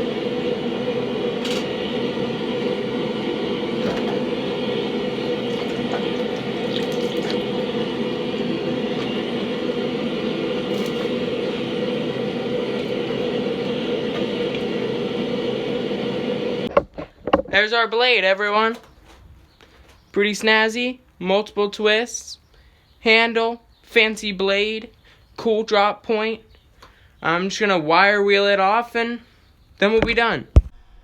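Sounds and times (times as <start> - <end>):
forge roaring: 0.0 - 16.7.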